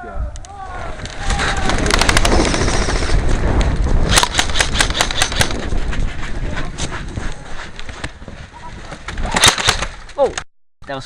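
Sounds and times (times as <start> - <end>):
airsoft guns firing: 1.3 - 3.2, 4.0 - 5.6, 9.2 - 10.0.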